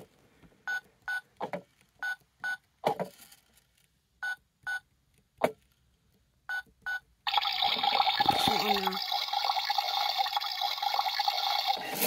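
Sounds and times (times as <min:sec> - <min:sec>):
toy washing machine beeps: 0:04.2 - 0:04.8
water filling rushing: 0:07.3 - 0:12.0.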